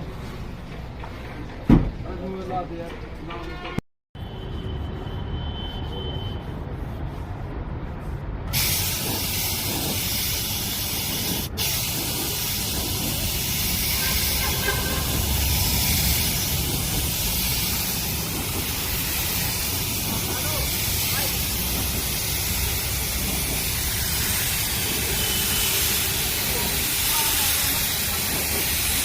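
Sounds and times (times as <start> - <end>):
paint spray gun hissing: 8.5 - 29.0.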